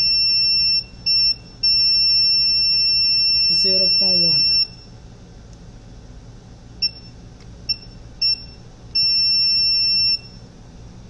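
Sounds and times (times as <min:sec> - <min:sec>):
multimeter beeps: 0:00.0 - 0:04.9, 0:06.8 - 0:10.4.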